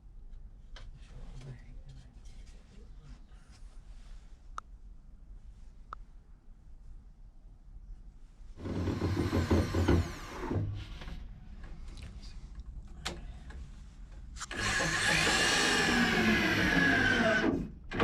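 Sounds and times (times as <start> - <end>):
electric drill drilling wood: 8.6 - 10.6, 14.4 - 18.0.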